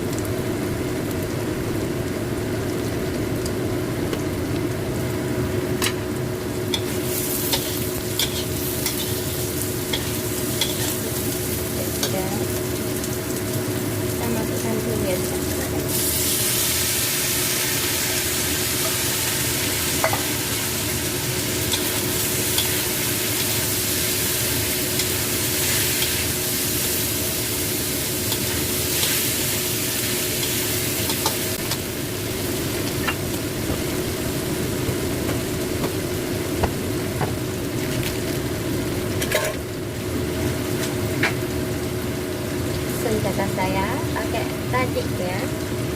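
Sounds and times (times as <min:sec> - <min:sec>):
stir-fry sizzling in hot oil: 0:00.0 - 0:45.9.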